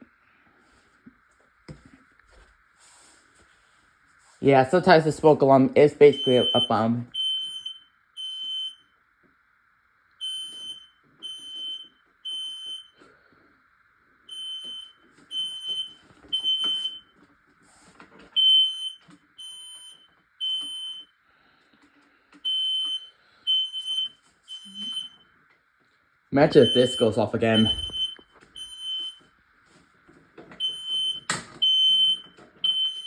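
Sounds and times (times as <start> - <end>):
smoke alarm beeping: 6.0 - 9.0, 10.2 - 13.0, 14.3 - 17.2, 18.4 - 21.2, 22.4 - 25.3, 26.4 - 29.3, 30.6 - 33.0.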